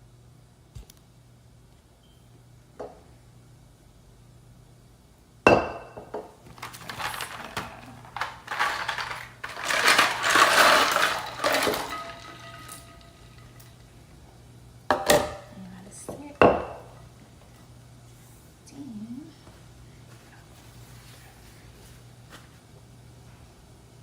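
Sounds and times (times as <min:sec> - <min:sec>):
kitchenware clattering and rattling: 0:06.5 - 0:13.7.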